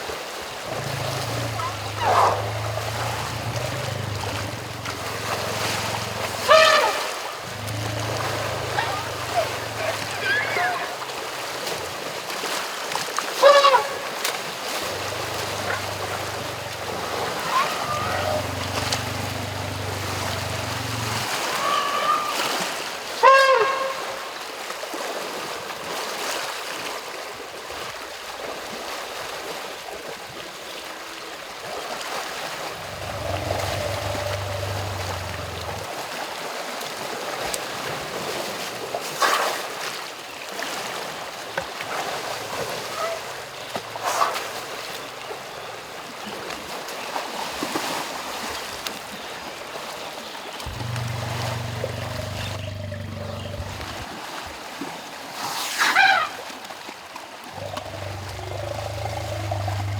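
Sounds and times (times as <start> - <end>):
elephants splashing in water: 0.0 - 30.5, 31.4 - 59.9
elephant squealing: 0.7 - 11.1, 13.4 - 14.1, 14.8 - 24.1, 32.8 - 35.8, 42.7 - 44.4, 50.7 - 54.0, 57.6 - 59.9
faint squeaks: 50.7 - 54.0.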